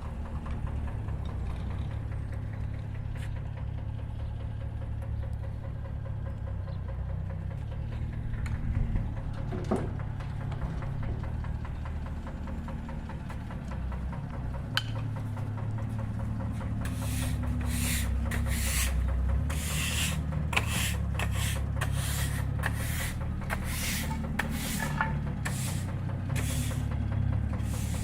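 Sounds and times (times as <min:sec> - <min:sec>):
small diesel engine running: 0:00.0 - 0:28.0
soil scraping: 0:16.8 - 0:27.0, 0:27.6 - 0:28.0.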